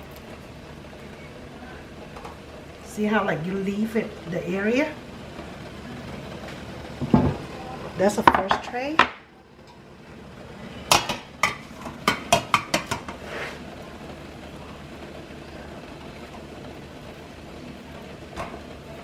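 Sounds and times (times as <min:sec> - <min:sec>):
steady low hiss: 0:00.0 - 0:19.0
metal steamer pot clattering: 0:10.9 - 0:13.2.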